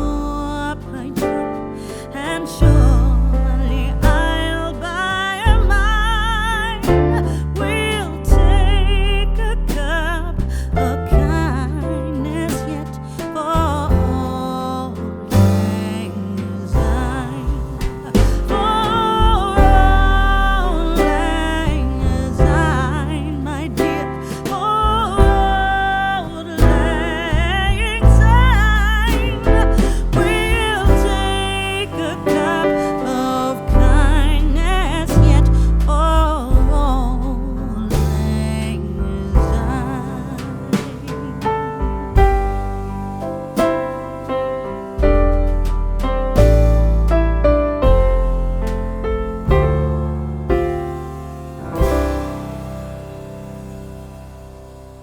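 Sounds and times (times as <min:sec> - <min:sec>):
person singing with vibrato: 0:00.0 - 0:42.8
sustained bass and instruments: 0:00.0 - 0:55.0.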